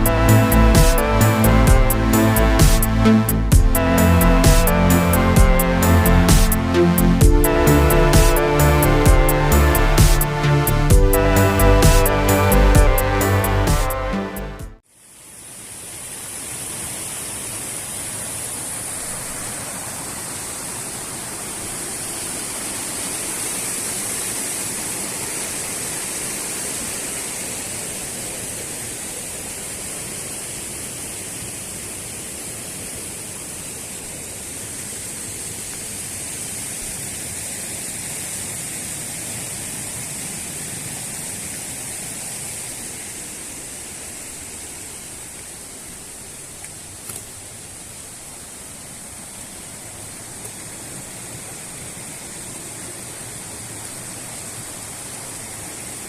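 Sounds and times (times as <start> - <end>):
waterfall roaring: 15.2 - 56.0.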